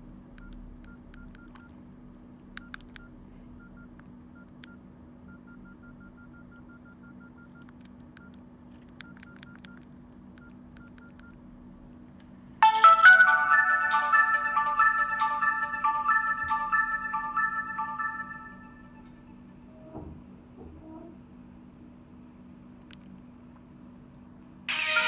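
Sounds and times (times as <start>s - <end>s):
phone keypad beeps: 0.4s - 1.7s, 2.6s - 8.4s, 9.0s - 11.4s
electronic ringtone melody: 12.6s - 19.4s, 24.7s - 25.0s.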